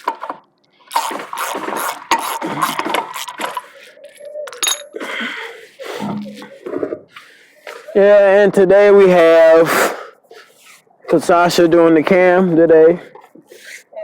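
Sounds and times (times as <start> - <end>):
metal tools clinking and rattling: 4.5 - 5.0.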